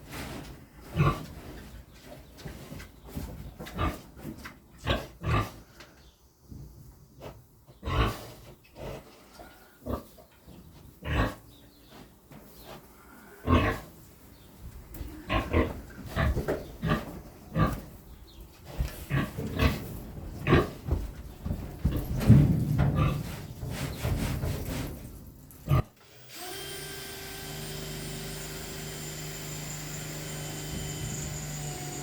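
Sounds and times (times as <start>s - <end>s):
pigs grunting: 0.8s - 1.6s, 3.7s - 5.9s, 7.2s - 10.2s, 11.0s - 11.5s, 12.8s - 14.0s, 15.0s - 18.0s, 18.6s - 23.9s, 25.6s - 25.9s.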